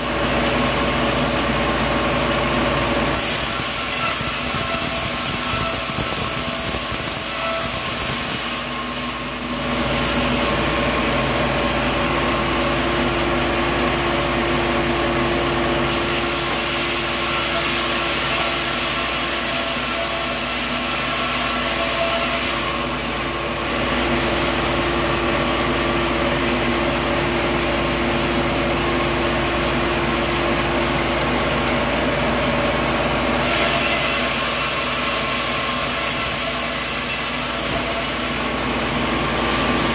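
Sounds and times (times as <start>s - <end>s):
sawmill saw cutting wood: 0.0s - 39.9s.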